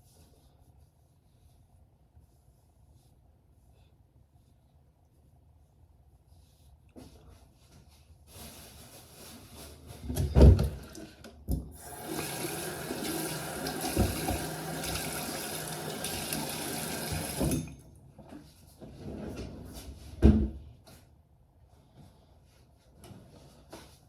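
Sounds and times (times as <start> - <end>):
water running: 11.7 - 17.8.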